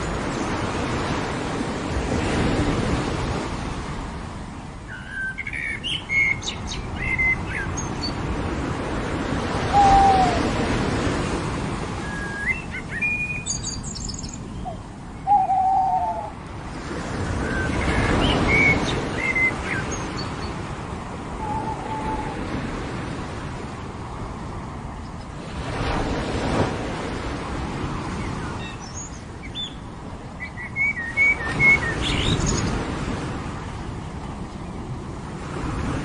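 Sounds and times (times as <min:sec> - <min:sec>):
ocean surf washing on beach: 0:00.0 - 0:36.0
lower slurred bird calls: 0:09.6 - 0:10.6, 0:12.0 - 0:16.4, 0:21.4 - 0:22.5
small birds chirping: 0:12.5 - 0:16.3.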